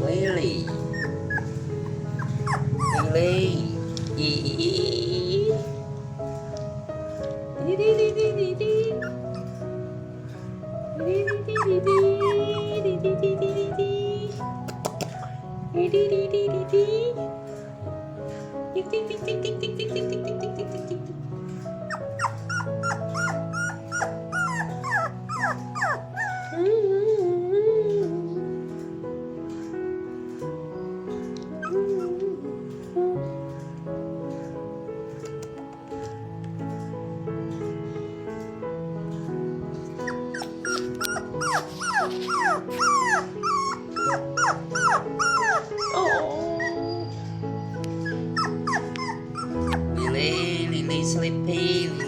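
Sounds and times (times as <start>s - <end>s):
puppy howling: 0.0s - 3.8s, 8.8s - 9.7s, 10.9s - 13.5s, 21.8s - 27.4s, 40.0s - 51.1s
puppy whimpering: 0.0s - 5.8s, 7.1s - 28.1s, 31.1s - 33.7s, 39.8s - 52.0s
background music with held chords: 0.0s - 52.0s.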